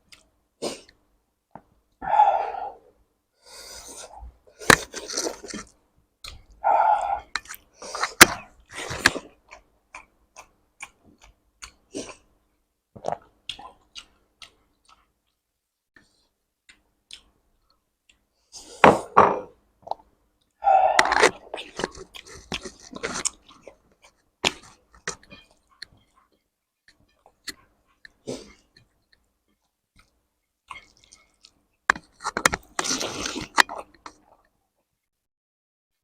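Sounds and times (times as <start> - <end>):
person chewing wetly: 13.0 - 15.4, 16.2 - 18.2, 21.0 - 34.5.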